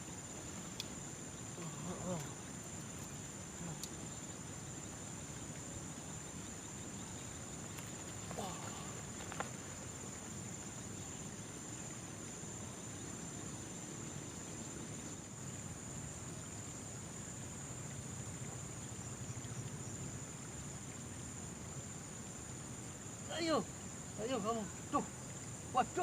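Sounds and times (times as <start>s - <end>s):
insects droning: 0.0s - 26.0s.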